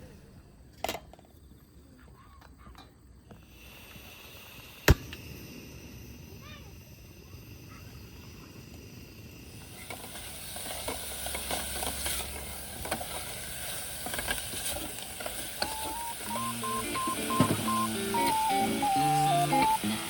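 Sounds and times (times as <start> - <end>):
steady hiss: 3.2 - 20.0
background music with picked melody: 15.8 - 20.0.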